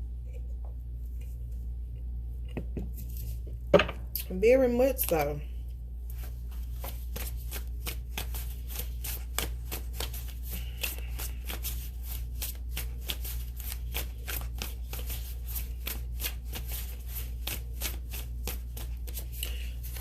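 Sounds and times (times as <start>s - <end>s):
steady low hum: 0.0s - 20.0s
cards being shuffled: 6.1s - 20.0s.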